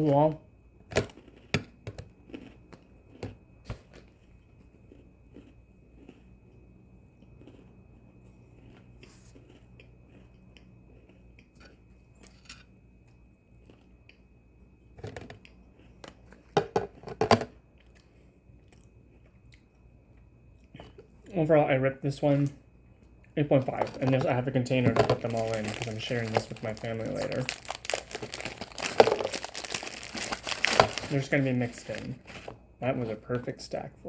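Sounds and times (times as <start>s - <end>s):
chewing and crunching cookie: 0.0s - 33.6s.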